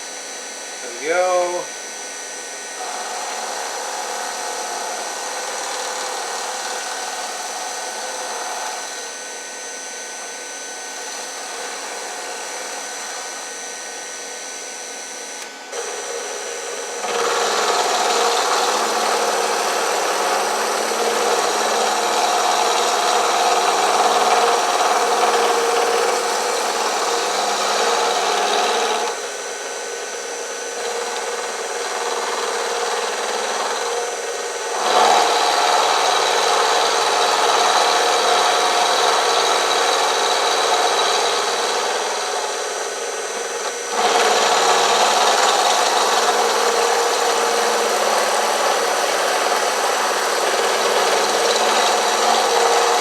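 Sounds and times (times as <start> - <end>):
milling machine cutting metal: 0.0 - 53.0.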